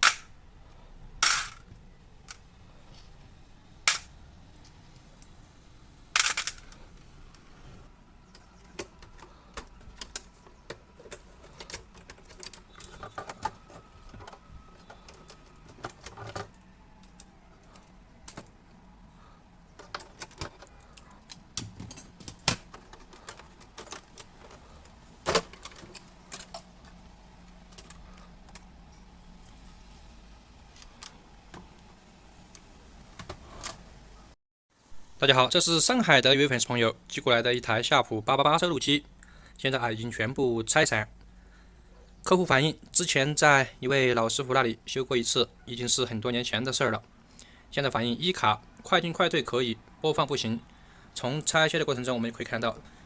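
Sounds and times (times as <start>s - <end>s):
small parts clicking and tapping: 6.2s - 7.0s, 8.3s - 18.8s, 19.8s - 28.7s.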